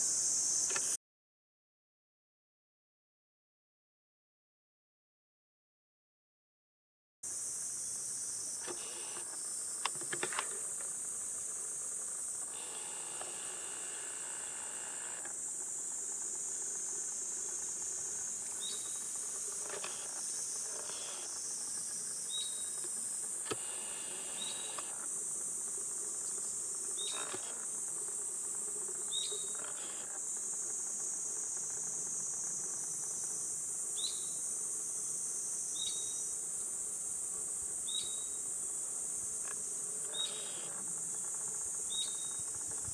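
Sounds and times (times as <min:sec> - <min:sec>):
cicadas shrilling: 0:00.0 - 0:01.0, 0:07.3 - 0:42.9.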